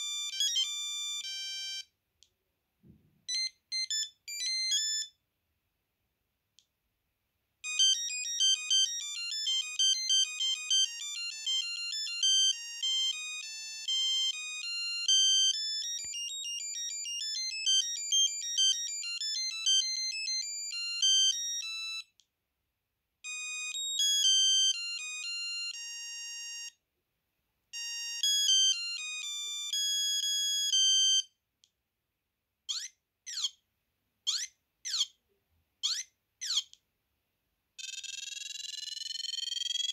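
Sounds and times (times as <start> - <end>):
mobile phone ringtone beeping: 0.0 - 1.9, 3.3 - 5.2, 7.6 - 22.2, 23.2 - 26.8, 27.8 - 31.3, 37.8 - 39.9.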